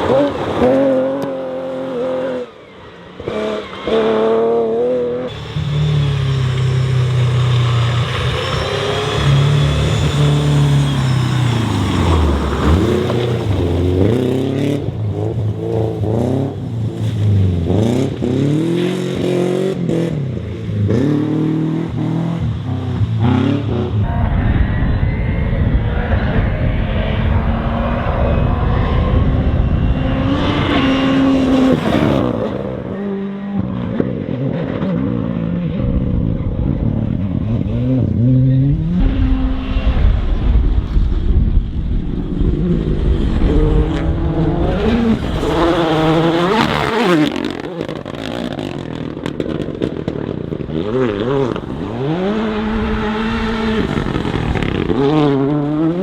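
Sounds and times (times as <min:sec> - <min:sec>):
cars swooping past: 0:00.0 - 0:14.7
rally car engines revving: 0:00.0 - 0:56.0.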